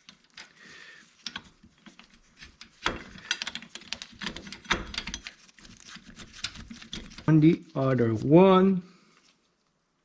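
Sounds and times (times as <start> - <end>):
metal bolts and tools clicking: 0.0 - 0.6, 1.2 - 5.4.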